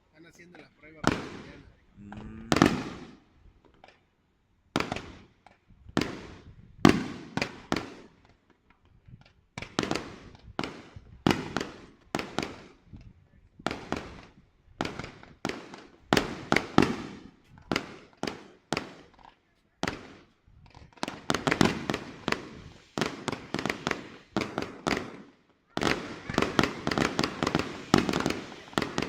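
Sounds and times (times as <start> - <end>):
fireworks bangs: 1.0 - 3.2, 5.9 - 8.2, 9.6 - 12.8, 13.6 - 29.0.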